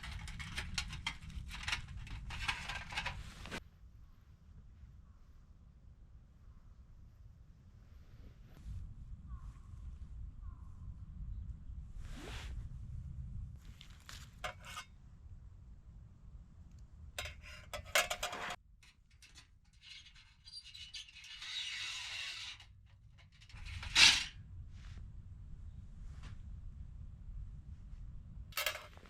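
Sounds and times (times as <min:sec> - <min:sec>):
metal panels clinking: 0:00.0 - 0:03.6, 0:14.4 - 0:14.8, 0:17.2 - 0:24.4, 0:28.6 - 0:29.0
metal scraping rub: 0:00.0 - 0:03.6, 0:14.4 - 0:14.8, 0:17.2 - 0:24.4.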